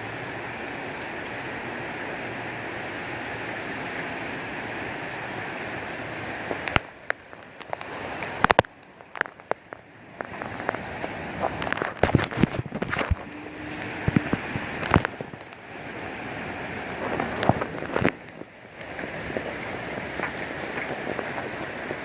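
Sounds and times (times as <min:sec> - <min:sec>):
heavy rain: 0:00.0 - 0:22.0
large raindrops tapping: 0:00.0 - 0:22.0
wind: 0:00.0 - 0:22.0.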